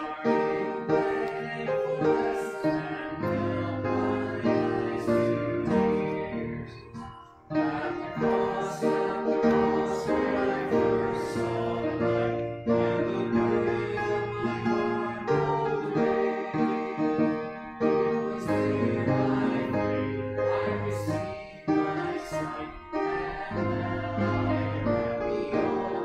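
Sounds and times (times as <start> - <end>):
person singing: 0.0 - 19.9
piano accompaniment: 0.0 - 26.0.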